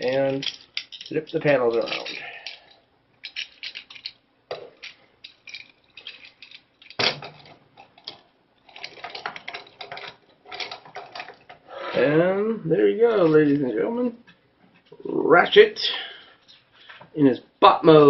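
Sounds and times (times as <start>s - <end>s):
plastic toy parts clicking: 0.0s - 4.2s.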